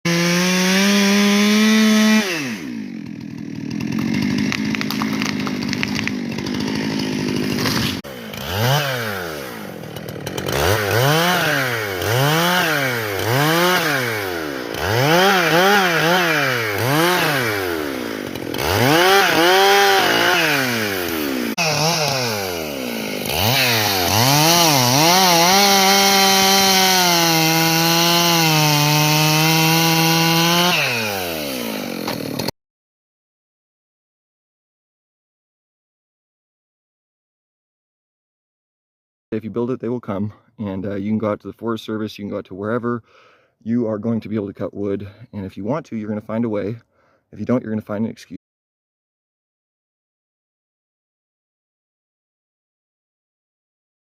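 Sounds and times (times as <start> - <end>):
chainsaw revving and idling: 0.1 - 32.5.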